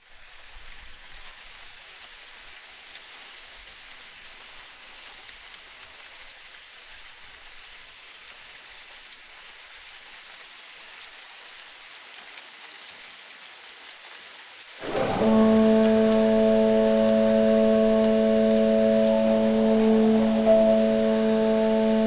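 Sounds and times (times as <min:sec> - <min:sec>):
soft steady hiss: 0:00.0 - 0:22.0
loud sustained horn-like tone: 0:14.8 - 0:22.0.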